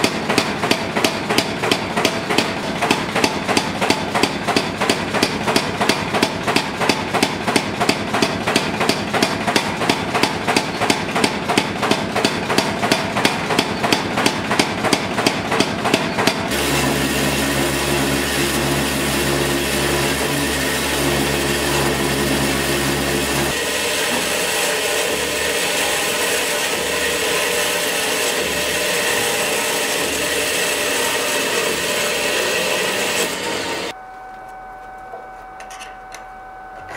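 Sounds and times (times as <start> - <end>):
hammer striking steel: 0.0 - 18.0
electric power tool motor: 16.5 - 34.0.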